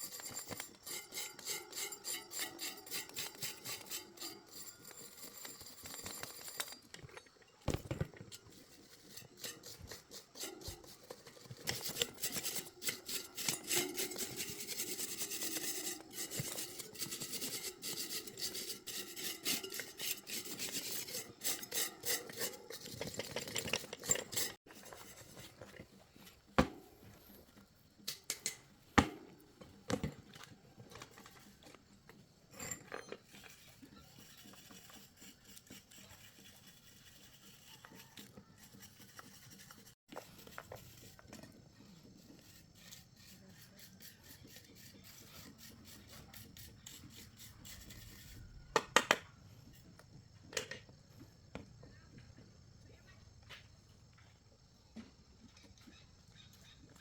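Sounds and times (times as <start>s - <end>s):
rapid hand scraping strokes: 0.0s - 6.8s, 8.4s - 25.6s, 33.3s - 41.2s, 41.8s - 48.5s.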